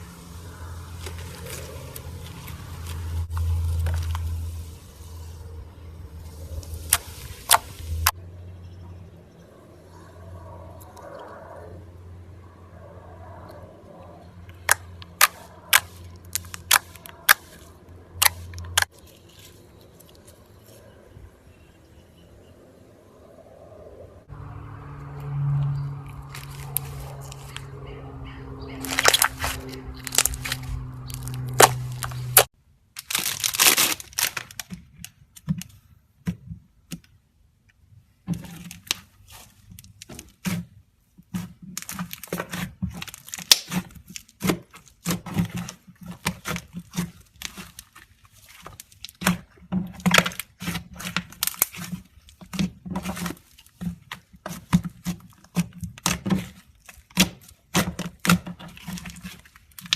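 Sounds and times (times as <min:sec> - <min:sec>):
low hum: 0:00.0 - 0:32.5
slime crackling and popping: 0:06.3 - 0:08.2, 0:14.5 - 0:19.0, 0:28.8 - 0:34.7, 0:41.8 - 0:53.8.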